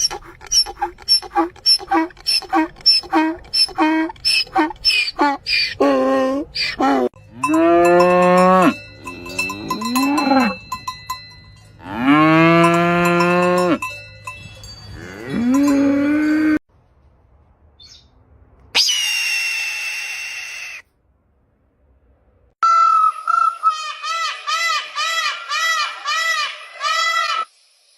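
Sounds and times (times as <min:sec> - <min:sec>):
cows mooing: 0:00.0 - 0:10.8, 0:11.8 - 0:13.8, 0:14.9 - 0:16.6
cowbells ringing and clinking: 0:07.2 - 0:16.6.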